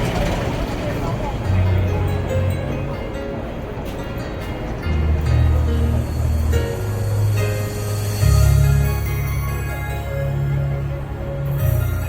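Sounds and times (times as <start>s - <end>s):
slow pop ballad instrumental: 4.8s - 12.0s.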